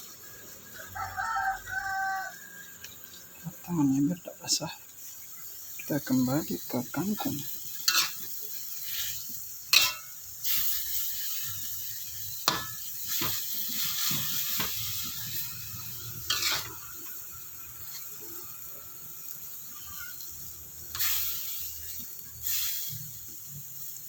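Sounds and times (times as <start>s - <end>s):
greens sizzling in a pan: 0.0s - 24.0s
spatula scraping a pan: 6.7s - 18.7s, 19.5s - 23.4s.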